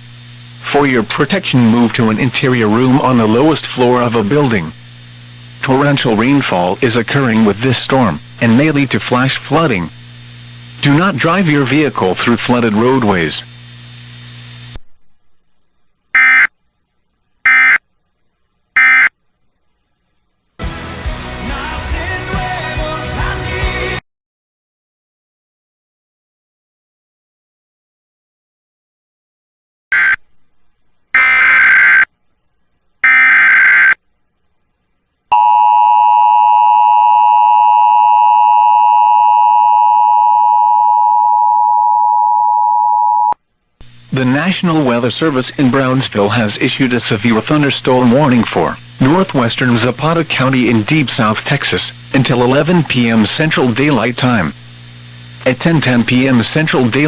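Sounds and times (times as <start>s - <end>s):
digital data buzzing bursts: 16.1s - 16.5s, 17.4s - 17.8s, 18.8s - 19.1s, 31.1s - 32.1s, 33.0s - 34.0s
two-tone attention signal: 18.8s - 19.1s, 35.4s - 43.4s
music: 20.6s - 24.0s
buzzy digital data bursts: 31.1s - 32.1s, 33.0s - 34.0s, 43.8s - 57.0s.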